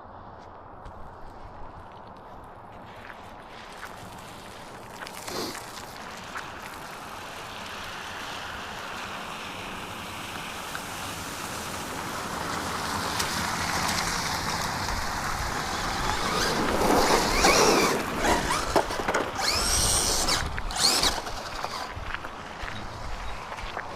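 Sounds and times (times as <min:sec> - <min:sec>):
radio-controlled car motor whine: 0:15.6 - 0:22.0.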